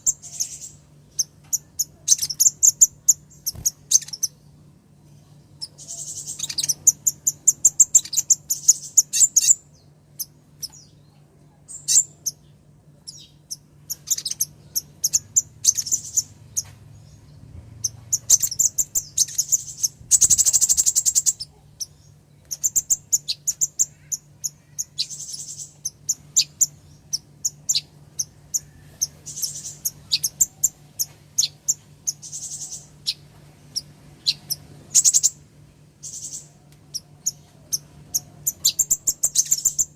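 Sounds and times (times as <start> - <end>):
bird high-pitched chirps: 0.0 - 4.4, 5.2 - 35.4, 36.0 - 39.9.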